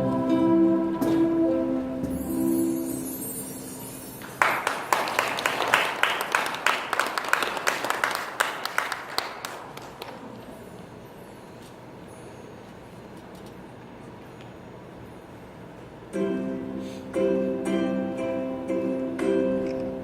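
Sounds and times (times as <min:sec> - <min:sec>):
low room noise: 0:00.0 - 0:20.0
audience applauding: 0:04.2 - 0:10.5.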